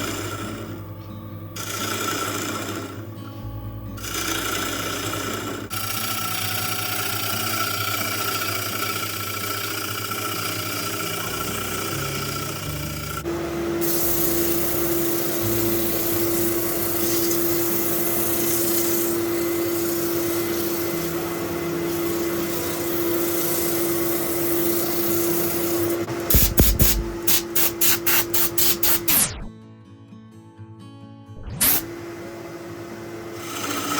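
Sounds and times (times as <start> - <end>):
tool scraping spinning wood: 0.0 - 0.8, 1.6 - 3.1, 4.0 - 29.2, 33.2 - 33.9
wood lathe humming: 0.0 - 27.8, 31.8 - 33.9
loud pulses: 26.0 - 27.5.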